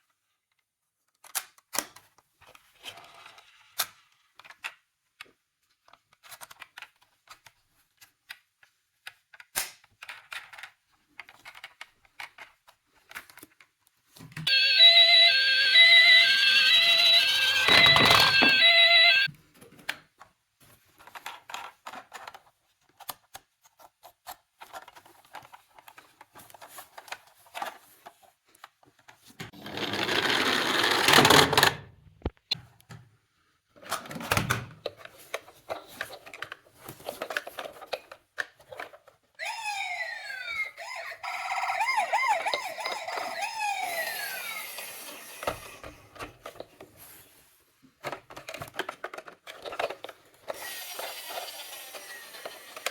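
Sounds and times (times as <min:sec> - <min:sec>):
plastic clicks and handling: 0:00.5 - 0:02.6, 0:03.8 - 0:14.4, 0:21.0 - 0:29.4, 0:48.0 - 0:50.6
toy electronic siren wailing: 0:14.5 - 0:19.3, 0:39.4 - 0:45.4.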